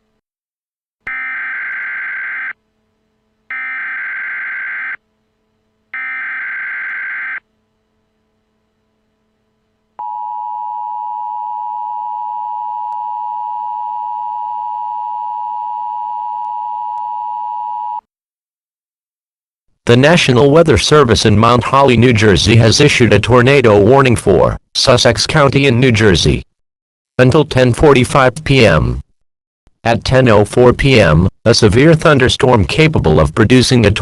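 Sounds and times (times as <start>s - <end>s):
data burst tones: 1.1s - 2.5s
two-tone attention signal: 1.1s - 2.5s.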